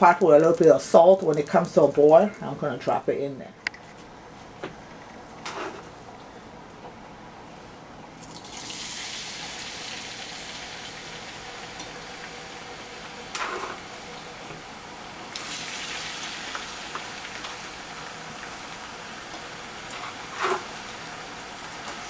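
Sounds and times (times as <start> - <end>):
food sizzling in oil: 8.2 - 22.0.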